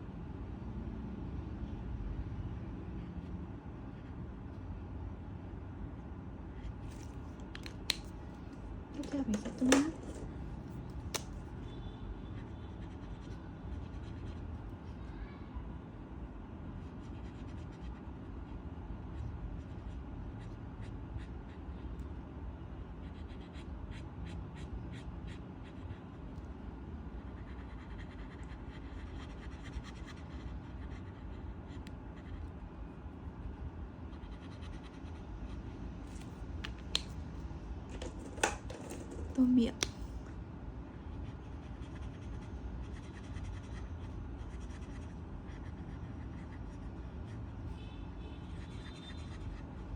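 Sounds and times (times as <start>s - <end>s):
pen scratching on paper: 9.0s - 10.3s, 17.0s - 18.0s, 27.3s - 32.5s, 41.1s - 46.9s, 48.5s - 49.7s
steady low hum: 15.7s - 49.9s.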